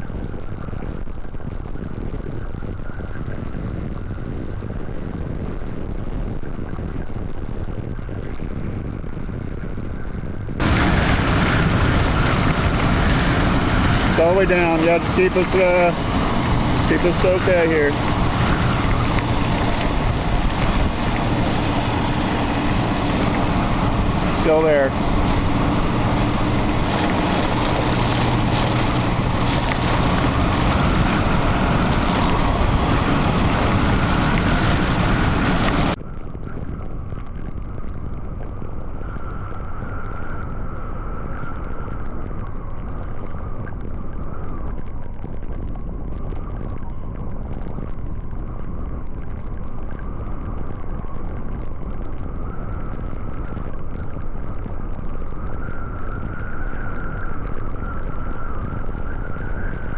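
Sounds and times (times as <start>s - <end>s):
low rumble with wavering tone: 0.0s - 59.9s
wind buffeting microphone: 0.0s - 59.9s
vehicle engine hum: 10.6s - 36.0s.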